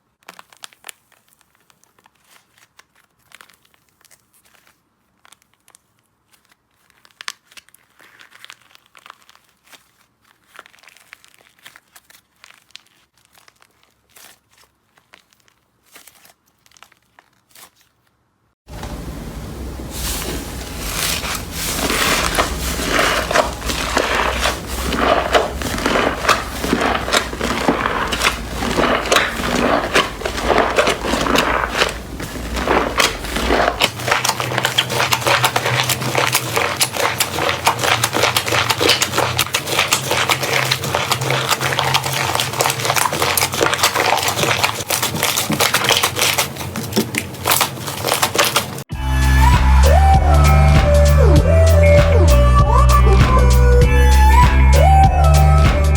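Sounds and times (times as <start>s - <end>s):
slime crackling and popping: 0.0s - 18.0s, 19.9s - 48.9s
music: 48.9s - 55.9s.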